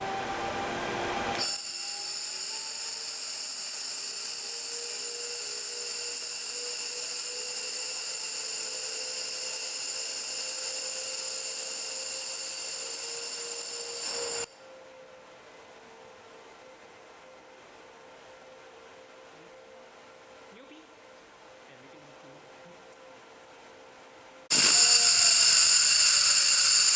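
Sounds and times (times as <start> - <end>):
laser welder hissing and whining: 1.4 - 14.5, 24.5 - 26.9
machine hum: 24.5 - 26.9.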